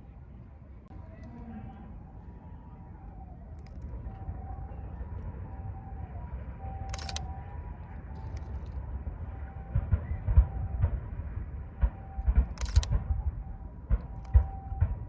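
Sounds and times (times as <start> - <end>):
faint whistling of fireworks: 0.0 - 15.0
distant fireworks rumble: 1.4 - 15.0
sharp click: 12.4 - 13.0.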